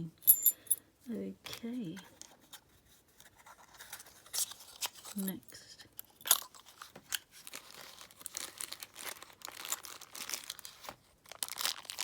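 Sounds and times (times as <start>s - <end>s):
packaging crinkling and rustling: 6.3s - 12.0s.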